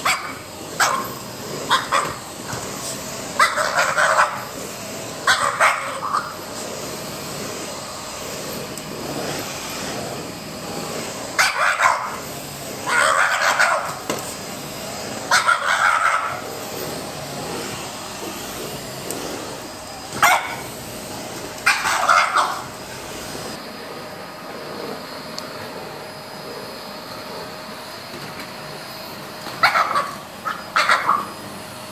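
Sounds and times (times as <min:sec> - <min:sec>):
dog barking strained: 0:00.0 - 0:06.6, 0:11.2 - 0:14.1, 0:15.1 - 0:16.6, 0:20.2 - 0:20.7, 0:21.6 - 0:22.8, 0:29.6 - 0:31.4
vacuum cleaner running: 0:00.0 - 0:31.9.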